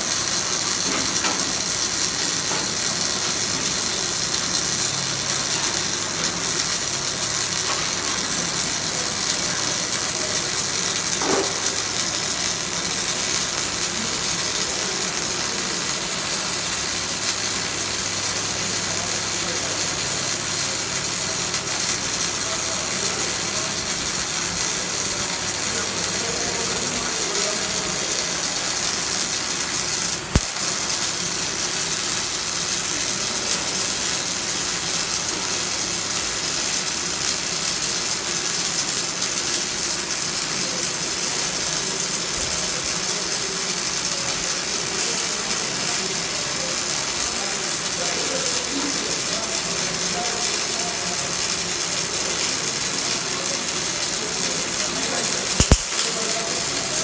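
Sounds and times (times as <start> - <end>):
welding arc crackling: 0.0 - 57.0
sharp click: 30.3 - 30.6, 55.6 - 56.1.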